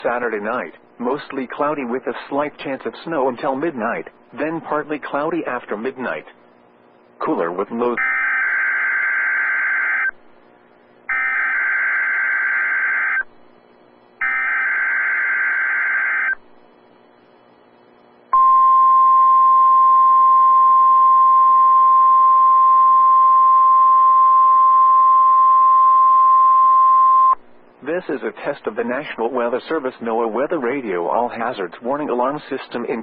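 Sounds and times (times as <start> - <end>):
harsh buzzing data bursts: 7.7 - 10.2, 11.1 - 13.3, 14.2 - 17.4
steady warning alarm tone: 7.9 - 10.2, 11.1 - 13.3, 14.2 - 16.4.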